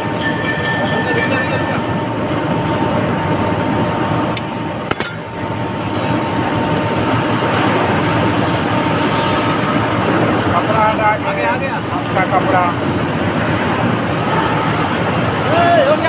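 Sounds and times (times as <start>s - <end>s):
mechanical running noise with whine: 0.0s - 16.0s.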